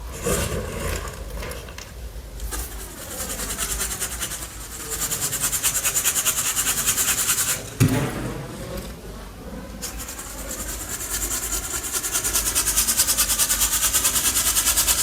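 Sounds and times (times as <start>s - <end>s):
powder sifted through mesh sieve: 2.4s - 7.8s, 9.8s - 15.0s.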